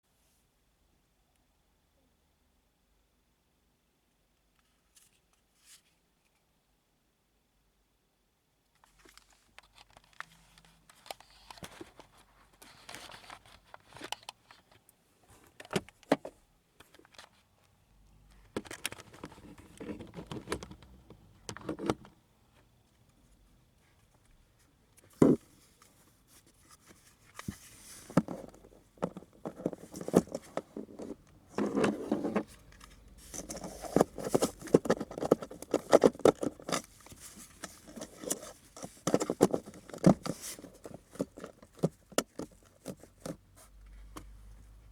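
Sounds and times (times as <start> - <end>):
hands handling small hard objects: 26.9 - 43.4.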